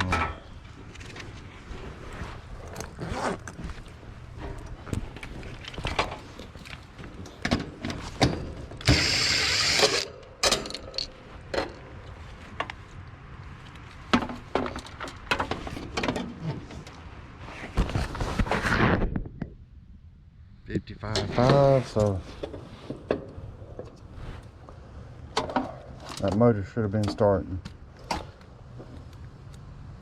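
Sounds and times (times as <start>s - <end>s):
tools clicking and rattling: 4.4s - 12.0s.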